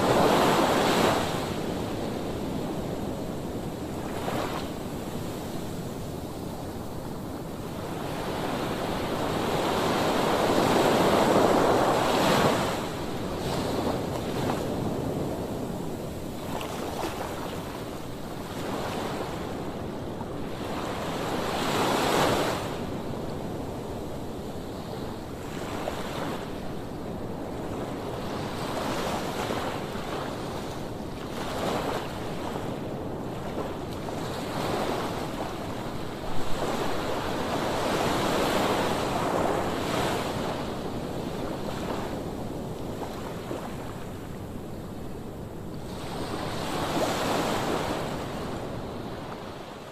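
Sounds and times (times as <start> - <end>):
wind on microphone: 0.0 - 49.9.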